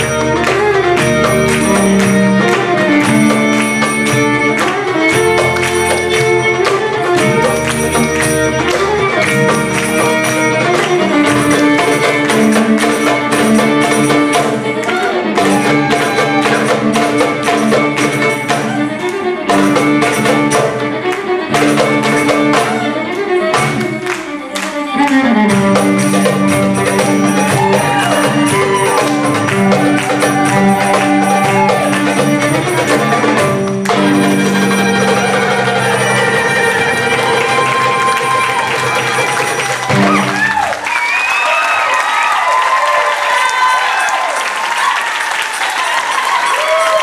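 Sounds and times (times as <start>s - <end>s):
violin melody: 0.0s - 40.6s
percussion strokes: 0.0s - 40.9s
band accompaniment: 0.0s - 47.0s.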